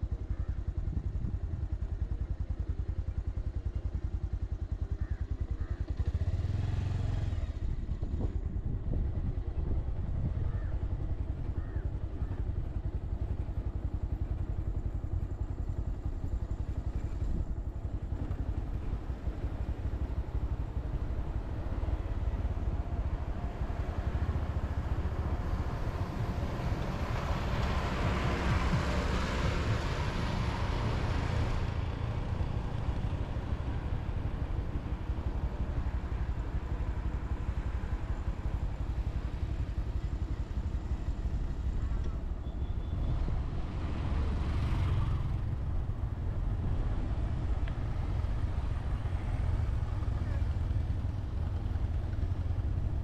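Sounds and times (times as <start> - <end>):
motorcycle engine rumble: 0.0 - 53.0.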